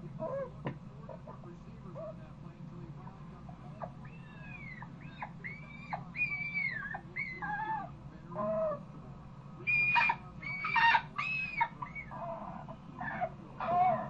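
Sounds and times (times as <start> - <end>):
dog whining and squealing: 3.8 - 8.8, 9.6 - 14.0.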